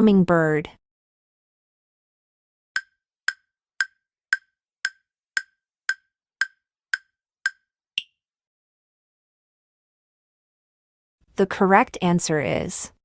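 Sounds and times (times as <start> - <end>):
countdown timer ticks: 2.8 - 8.1.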